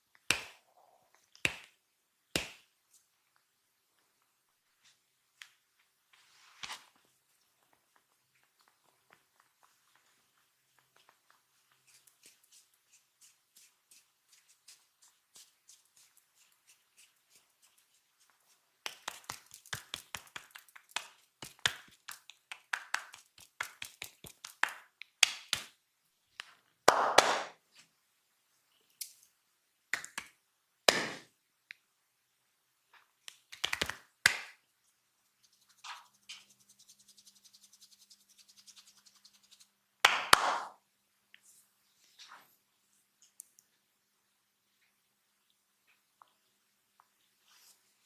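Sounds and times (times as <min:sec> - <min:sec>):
hands slapping on body: 0:00.2 - 0:00.7, 0:01.3 - 0:02.8, 0:18.8 - 0:25.8, 0:26.4 - 0:27.6, 0:29.9 - 0:31.3, 0:33.2 - 0:34.6, 0:40.0 - 0:40.8.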